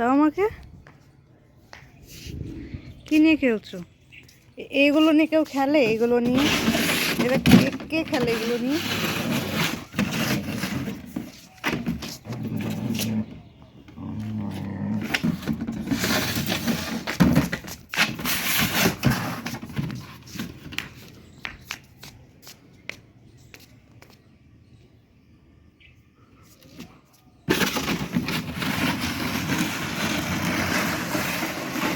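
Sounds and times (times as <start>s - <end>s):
dog growling: 13.9s - 15.3s.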